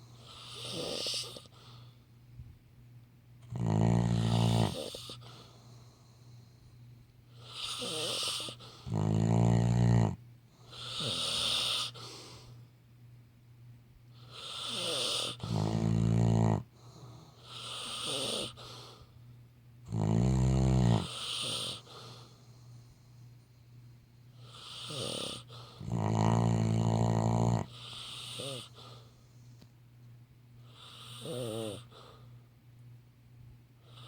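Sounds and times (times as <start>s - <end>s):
dog snoring: 0.0s - 1.9s, 3.4s - 6.4s, 7.3s - 12.6s, 14.1s - 19.1s, 19.8s - 23.1s, 24.4s - 29.3s, 30.6s - 32.3s, 33.8s - 34.0s.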